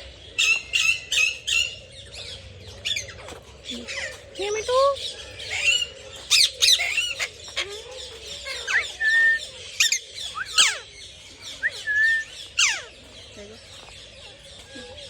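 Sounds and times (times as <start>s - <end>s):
parrots screeching: 5.4s - 7.7s, 9.7s - 10.9s, 11.7s - 12.9s.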